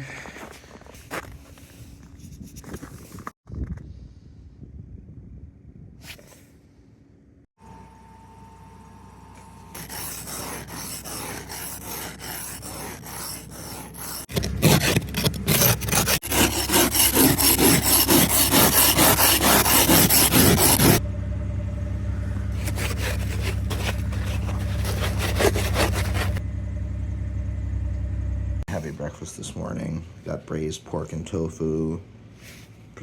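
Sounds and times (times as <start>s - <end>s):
ice scraper scraping car window: 9.8s - 21.0s, 22.5s - 26.4s
car engine idling: 21.0s - 28.6s.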